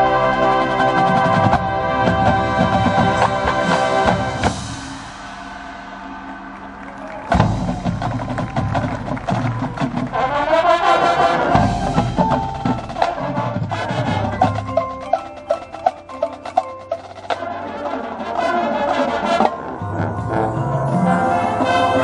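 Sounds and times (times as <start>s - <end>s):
marching band playing: 0.0s - 22.0s.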